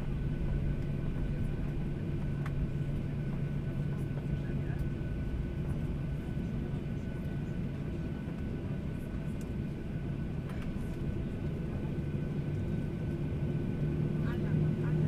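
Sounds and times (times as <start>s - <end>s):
jet engine cabin drone: 0.0s - 15.0s.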